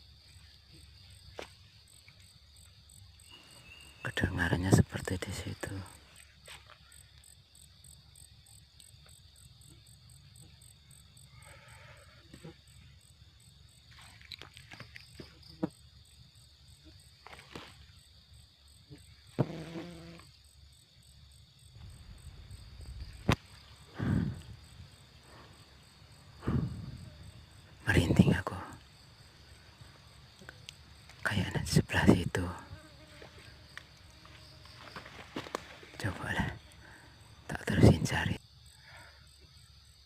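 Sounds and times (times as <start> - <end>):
crickets and insects trilling: 0.0 - 40.0
faint clicks and rustles: 33.2 - 36.8.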